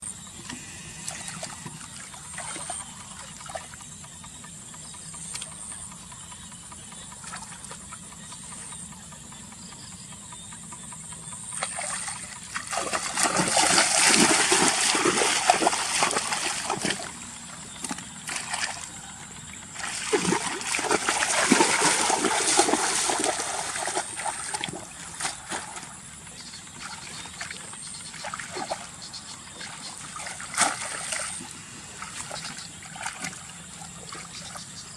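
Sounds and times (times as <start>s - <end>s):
water splashing and sloshing: 0.4s - 4.1s, 11.5s - 34.9s
small splashes and drips: 11.7s - 17.1s, 29.6s - 31.4s, 32.2s - 34.6s.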